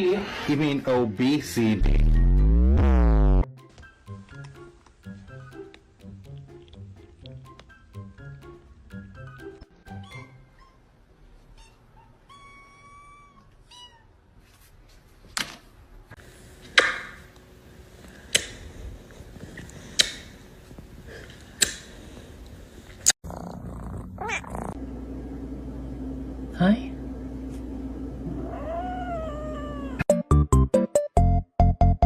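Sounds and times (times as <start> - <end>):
steady low hum: 23.6 - 29.9
cat meowing: 24.2 - 24.5, 28.3 - 30.1.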